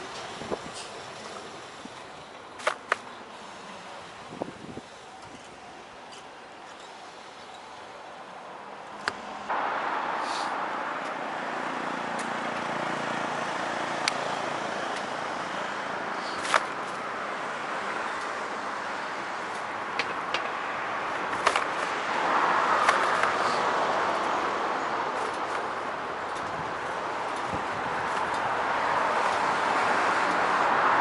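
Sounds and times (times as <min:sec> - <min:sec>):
road and traffic noise: 0:00.0 - 0:31.0
sharp clicks and knocks: 0:19.5 - 0:20.6, 0:21.3 - 0:21.9.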